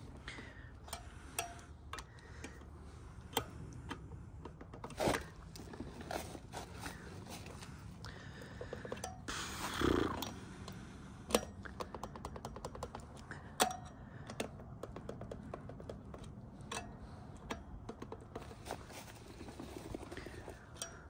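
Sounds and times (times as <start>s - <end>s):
torque wrench ticking: 0.1s - 5.0s, 8.1s - 18.4s.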